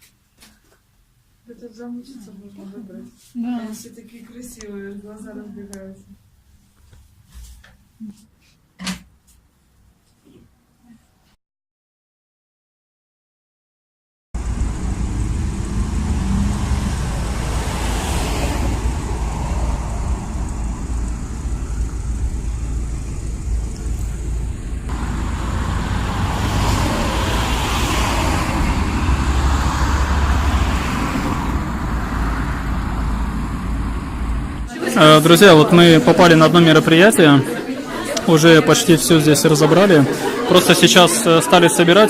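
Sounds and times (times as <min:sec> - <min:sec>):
street traffic rumble: 0:14.4 - 0:41.7
vehicles passing: 0:14.4 - 0:42.0.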